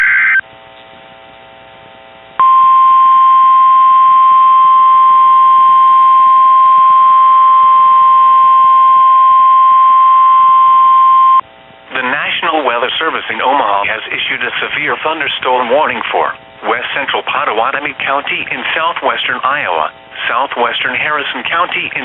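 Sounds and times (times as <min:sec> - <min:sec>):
faint receiver hum: 0:00.0 - 0:22.0
steady warning alarm tone: 0:02.4 - 0:11.4.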